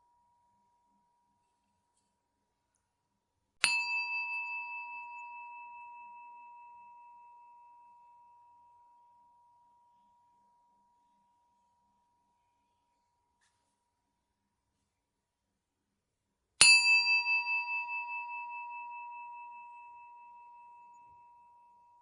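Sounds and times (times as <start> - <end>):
high-pitched bell ringing: 3.7 - 7.6.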